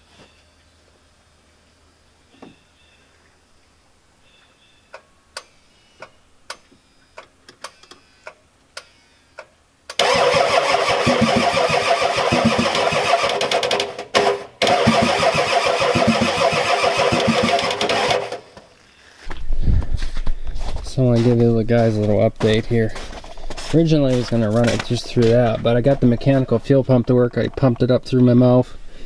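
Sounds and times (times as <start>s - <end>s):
diesel engine starter cranking: 9.9s - 18.6s.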